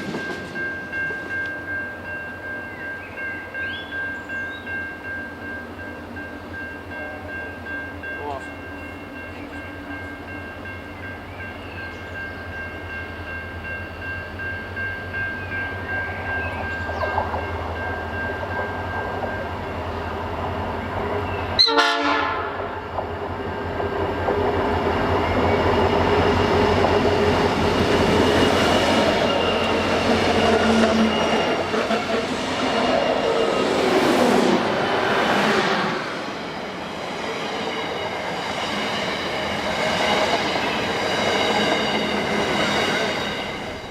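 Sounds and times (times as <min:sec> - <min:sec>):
train horn chord: 0:21.6 - 0:22.9.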